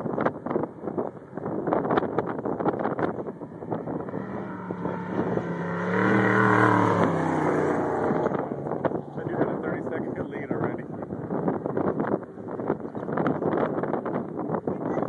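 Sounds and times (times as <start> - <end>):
wind buffeting microphone: 0.0 - 15.0
race vehicle engine passing: 2.8 - 13.2.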